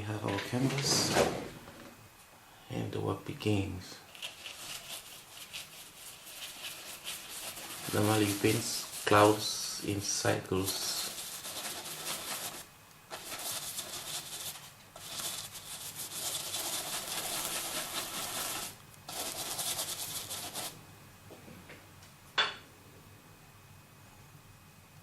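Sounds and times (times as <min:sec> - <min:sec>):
paintbrush scrubbing on canvas: 0:04.1 - 0:09.8, 0:10.5 - 0:20.8.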